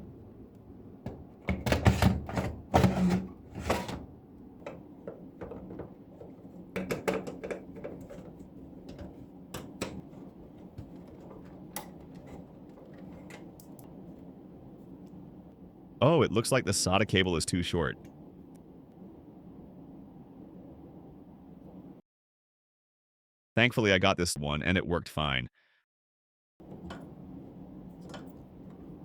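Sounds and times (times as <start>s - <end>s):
drive being fastened into computer case: 1.1s - 13.9s, 26.6s - 29.0s.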